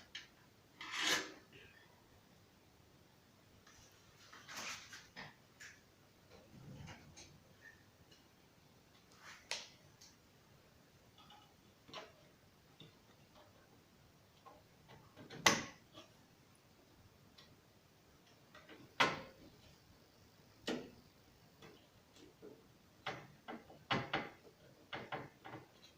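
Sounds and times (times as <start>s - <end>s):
computer parts clicking and knocking: 23.0s - 25.9s.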